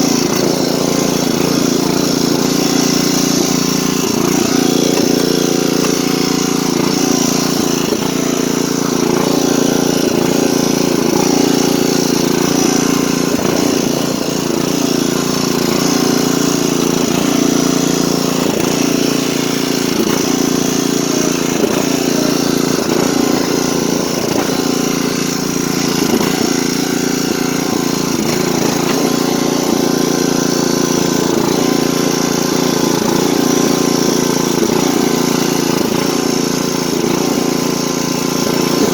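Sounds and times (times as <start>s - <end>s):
lawn tractor engine running: 0.0s - 38.9s.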